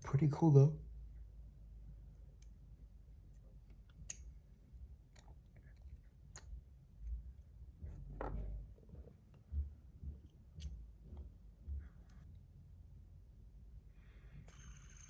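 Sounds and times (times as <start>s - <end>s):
fidget spinner handling noise: 14.4s - 15.0s.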